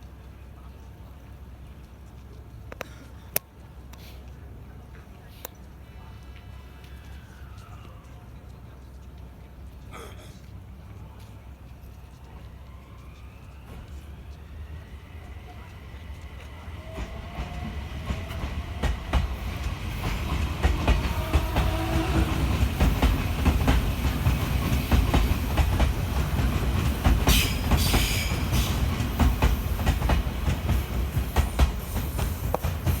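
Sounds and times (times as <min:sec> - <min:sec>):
wheels clicking over rail joints: 0:00.0 - 0:33.0
electric train motors whining: 0:12.3 - 0:33.0.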